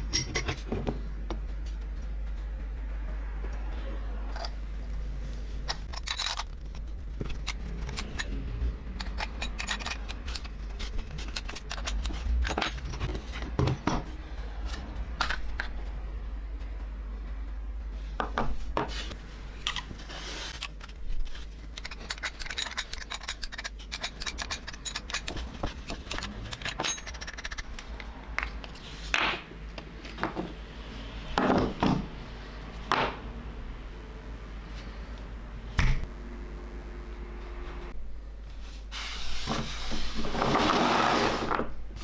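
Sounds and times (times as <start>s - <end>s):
steady low hum: 0.0s - 39.9s
small metal parts clinking: 5.7s - 13.7s, 20.6s - 28.1s.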